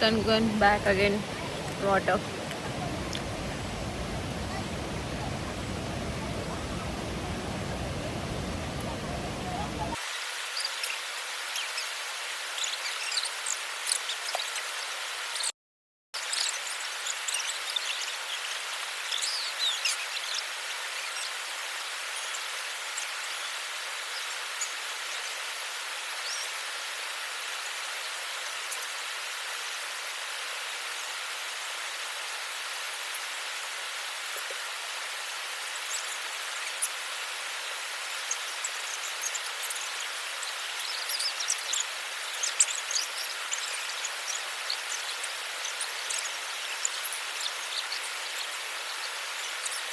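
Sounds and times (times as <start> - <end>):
hiss of water: 0.0 - 15.5
steady rain hiss: 0.0 - 15.5, 16.2 - 49.9
bird chirps: 16.2 - 21.4, 38.0 - 49.9.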